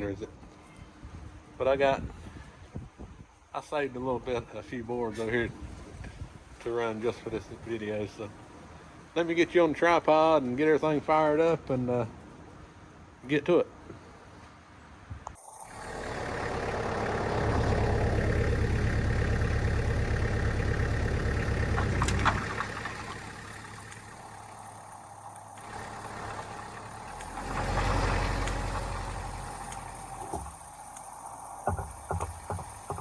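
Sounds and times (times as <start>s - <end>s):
tractor engine running: 15.4s - 33.0s.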